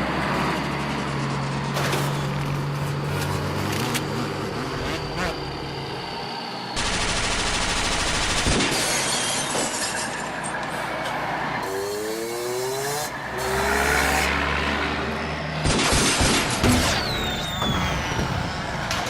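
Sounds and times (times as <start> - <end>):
car engines revving: 0.0 - 6.8, 10.3 - 19.0
crashing impacts with shattering: 8.5 - 10.5.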